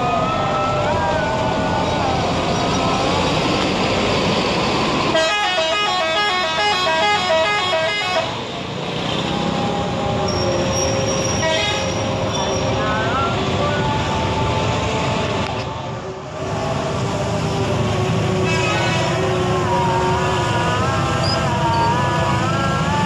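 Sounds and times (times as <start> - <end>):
bus and traffic noise: 0.0 - 23.0
bus horn playing melody: 5.1 - 8.4, 11.2 - 12.0, 18.4 - 19.2.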